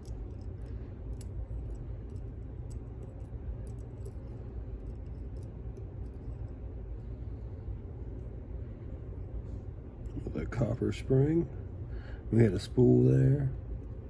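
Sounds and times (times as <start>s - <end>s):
small clicks of lock parts: 0.0s - 6.4s
steady low hum: 0.0s - 14.0s.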